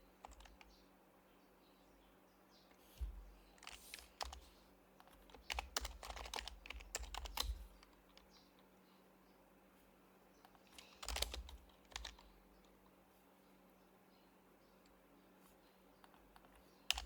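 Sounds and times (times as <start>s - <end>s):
soft muted keyboard typing: 0.0s - 0.8s, 2.7s - 8.4s, 10.5s - 12.8s, 16.0s - 17.0s.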